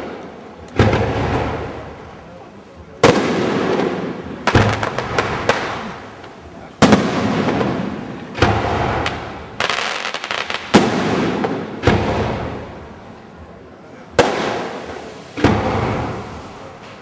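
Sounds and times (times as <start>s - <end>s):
fireworks bangs echoing: 0.0s - 2.2s, 3.0s - 13.2s, 14.1s - 17.0s
quick small firework pops: 14.2s - 17.0s.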